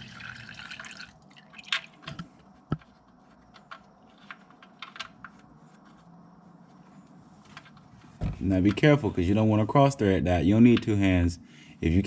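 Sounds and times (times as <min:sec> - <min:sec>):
oil pouring into a pan: 0:00.0 - 0:01.9
oil dripping: 0:00.0 - 0:02.1.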